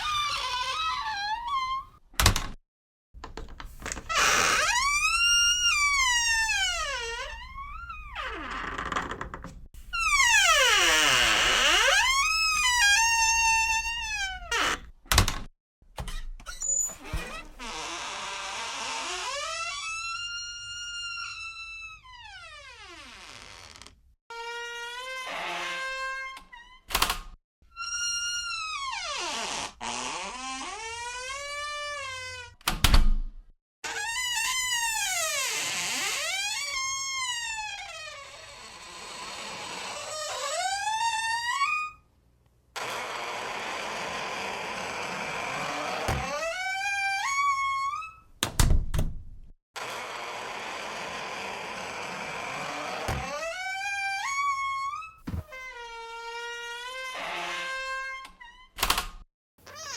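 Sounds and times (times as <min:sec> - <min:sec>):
wooden door hinges creaking: 0:00.0 - 0:02.6, 0:03.2 - 0:27.2, 0:50.6 - 0:59.1.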